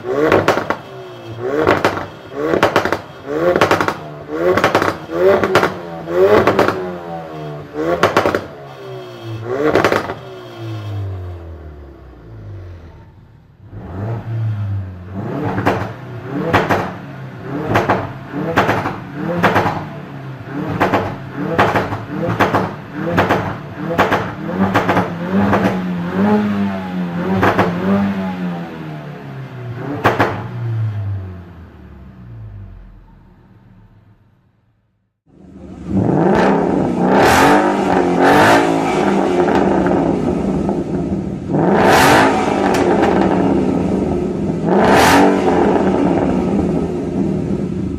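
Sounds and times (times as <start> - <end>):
exhaust crackles and pops: 0.0 - 7.0, 7.9 - 8.6, 9.7 - 10.3, 15.4 - 17.0, 17.6 - 19.9, 20.7 - 25.9, 30.0 - 30.5, 36.4 - 47.9
car engine revving: 0.0 - 34.4, 35.2 - 47.9.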